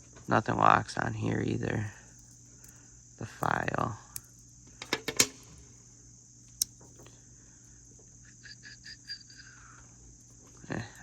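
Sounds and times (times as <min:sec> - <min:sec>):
metal tool clicks: 0:04.2 - 0:05.4, 0:06.5 - 0:06.8.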